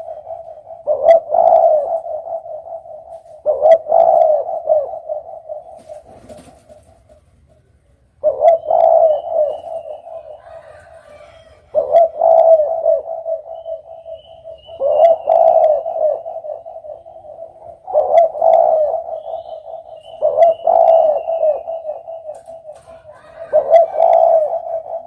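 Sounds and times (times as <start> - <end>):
dove cooing: 0.0 - 7.2, 8.2 - 25.0
faint high chirping: 13.3 - 23.6.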